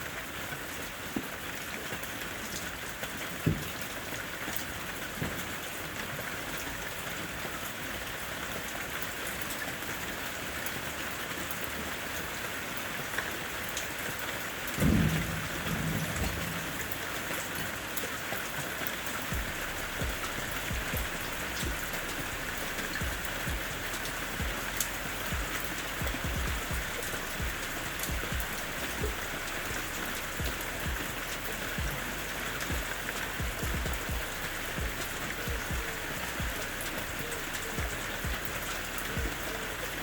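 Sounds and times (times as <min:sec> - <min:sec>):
rain pattering on a surface: 0:00.0 - 0:40.0
low thump: 0:14.8 - 0:16.9, 0:25.3 - 0:31.0.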